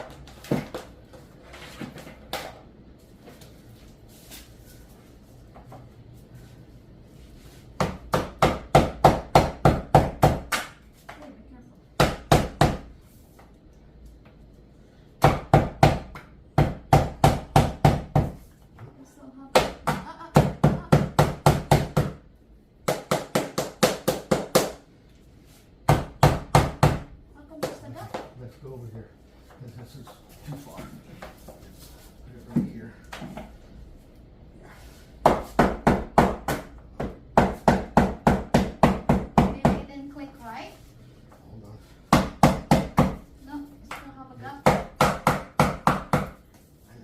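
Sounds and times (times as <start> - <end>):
knocking on flooring planks: 35.2 - 40.0.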